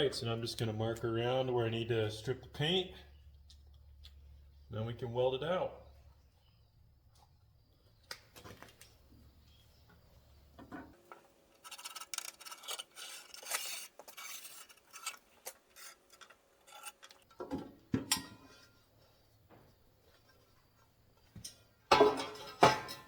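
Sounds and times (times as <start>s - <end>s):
tool scratching steel plate: 11.6s - 17.3s.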